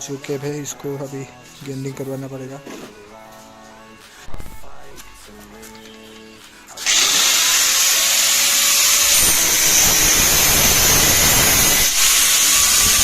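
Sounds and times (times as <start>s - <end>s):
power grinder grinding metal: 6.8s - 13.0s.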